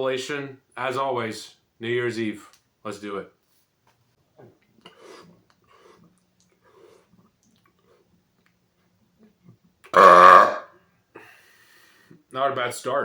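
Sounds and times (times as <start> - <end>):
soft swallowing: 10.0 - 10.6
faint breathing: 11.1 - 12.2.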